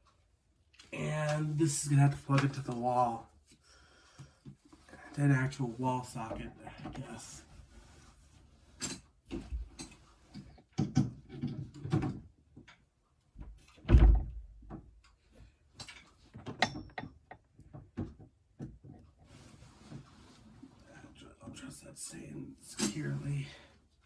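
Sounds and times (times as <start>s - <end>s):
handling knocks clicks and rustles: 8.8s - 20.7s.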